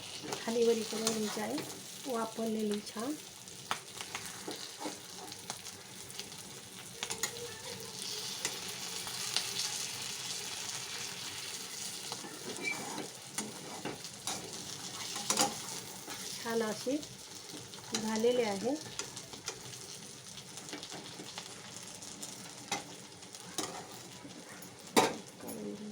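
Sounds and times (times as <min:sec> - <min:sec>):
vegetables sizzling in oil: 0:00.0 - 0:25.9
spatula scraping a pan: 0:00.3 - 0:01.7, 0:04.0 - 0:05.5, 0:11.4 - 0:16.4, 0:23.6 - 0:24.4.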